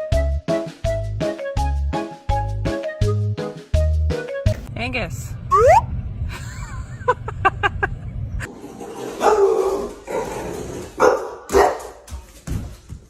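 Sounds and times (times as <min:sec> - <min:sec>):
dog yipping and barking: 0:05.5 - 0:05.9.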